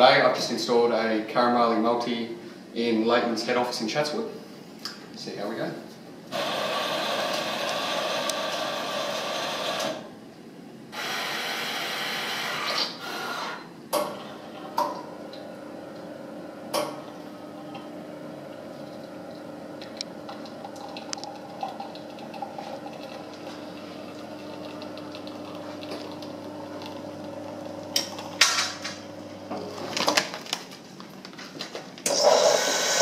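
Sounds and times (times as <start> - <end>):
coffee grinder whirring: 6.3 - 10.0, 19.9 - 30.0, 32.1 - 33.0
coffee machine humming: 6.3 - 10.2, 10.9 - 30.2, 32.0 - 33.0
brew unit clunks: 13.9 - 17.9.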